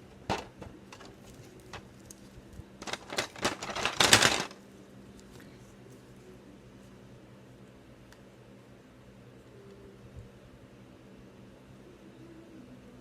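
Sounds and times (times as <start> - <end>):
objects clicking and rattling: 0.0 - 2.2, 2.8 - 4.6.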